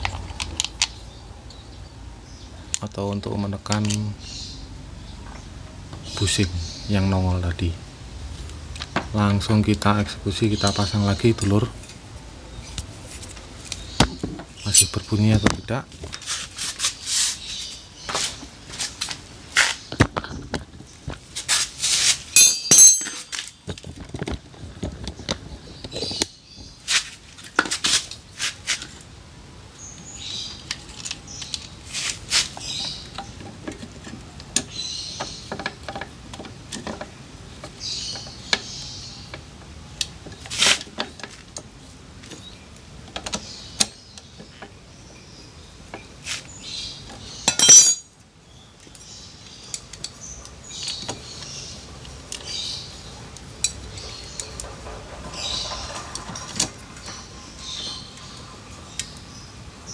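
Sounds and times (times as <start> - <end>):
metal tools clinking: 22.3 - 23.7, 47.4 - 48.1.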